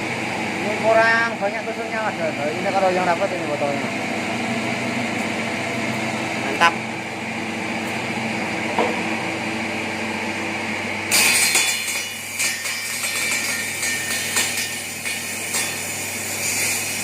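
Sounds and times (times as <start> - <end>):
machine motor hum: 0.0 - 11.1.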